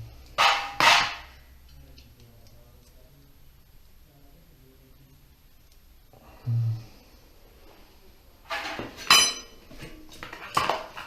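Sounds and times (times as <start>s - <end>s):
metal tools clanking: 8.5s - 11.0s.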